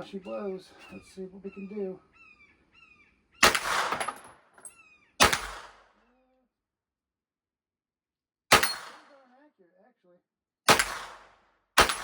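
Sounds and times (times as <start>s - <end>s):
gunshots with echo: 3.4s - 4.2s, 5.2s - 6.0s, 8.5s - 9.2s, 10.7s - 12.0s.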